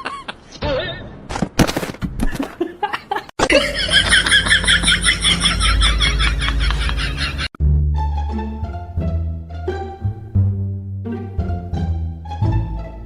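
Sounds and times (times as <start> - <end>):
person laughing: 0.0 - 0.4, 2.3 - 7.5.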